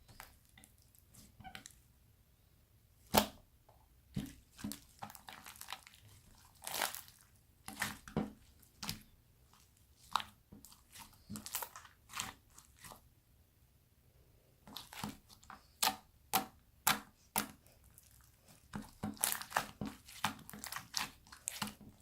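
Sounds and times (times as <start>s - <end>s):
slime squeezed with sticky pops: 4.2s - 8.2s, 18.7s - 22.0s.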